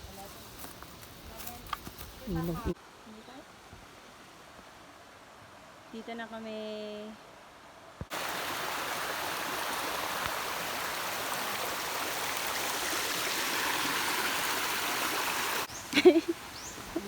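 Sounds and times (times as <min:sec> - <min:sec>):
stream flowing over rocks: 0:08.0 - 0:15.7.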